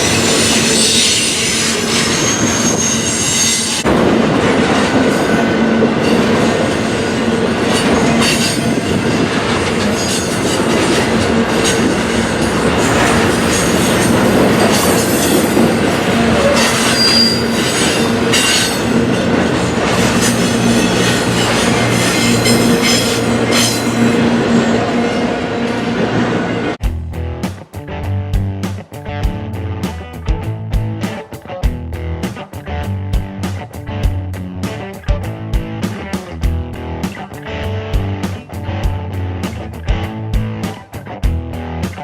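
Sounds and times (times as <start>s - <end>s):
wheel squeal: 0.0s - 3.9s, 6.0s - 26.7s
train wheels clattering over rails: 0.0s - 26.8s.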